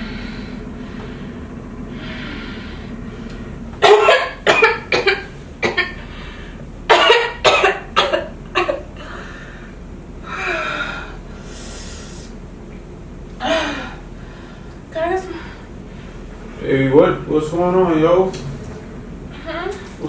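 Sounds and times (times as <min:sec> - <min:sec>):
heavy breathing: 0:00.0 - 0:03.8, 0:06.0 - 0:06.7, 0:09.0 - 0:12.4, 0:13.4 - 0:16.6, 0:18.8 - 0:20.0
woman coughing hard: 0:03.8 - 0:06.1, 0:06.9 - 0:09.2, 0:13.4 - 0:14.0.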